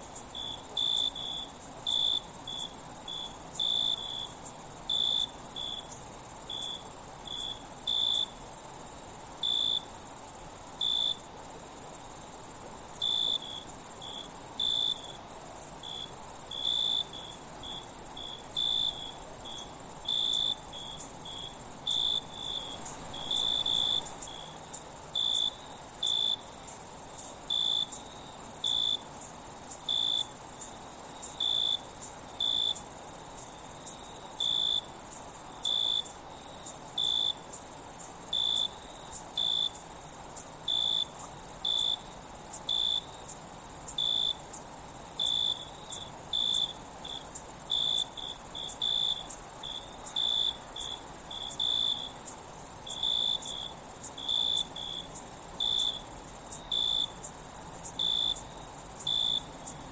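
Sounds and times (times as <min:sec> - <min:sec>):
cricket chirping: 0:00.0 - 0:59.9
high-pitched insect trill: 0:00.0 - 0:59.9.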